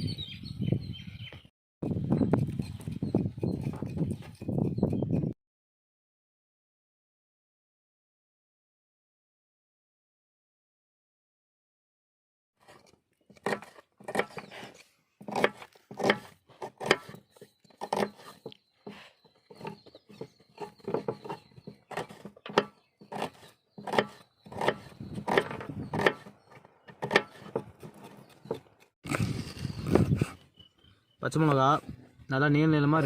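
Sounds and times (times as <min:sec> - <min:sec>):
knife chopping on wooden board: 0:13.3 - 0:14.5, 0:15.2 - 0:17.2, 0:17.8 - 0:28.8.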